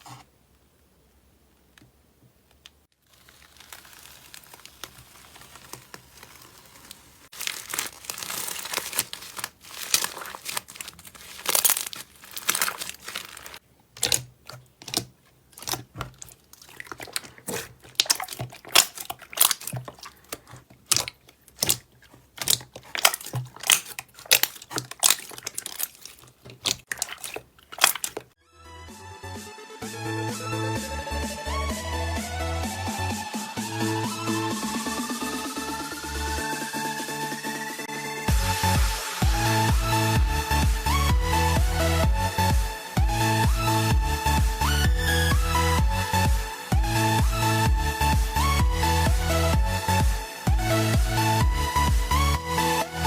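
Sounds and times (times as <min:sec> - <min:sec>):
slime crinkling and popping: 0:03.0 - 0:28.3.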